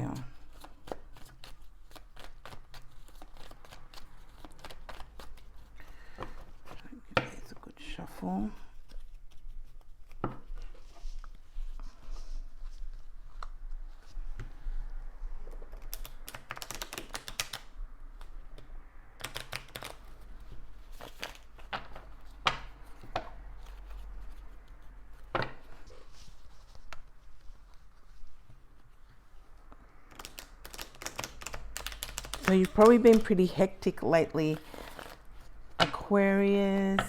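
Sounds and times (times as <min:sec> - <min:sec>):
cards shuffling: 0:00.0 - 0:07.4, 0:15.4 - 0:18.4, 0:19.2 - 0:20.2, 0:20.9 - 0:28.9, 0:30.0 - 0:35.9.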